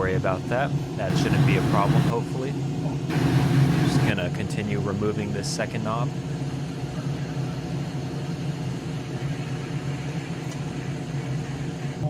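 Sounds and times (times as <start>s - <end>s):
steady low hum: 0.0s - 12.0s
hot air blowing: 1.1s - 2.2s, 3.1s - 4.2s.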